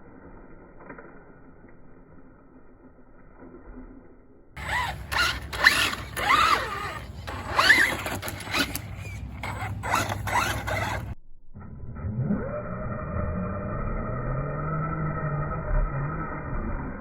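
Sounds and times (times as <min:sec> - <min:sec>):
electric motor whining: 0:04.6 - 0:11.2.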